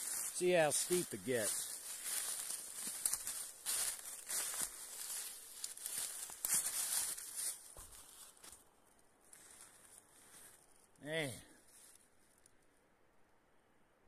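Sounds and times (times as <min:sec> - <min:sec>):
footsteps crunching through dry leaves: 0:00.0 - 0:10.8.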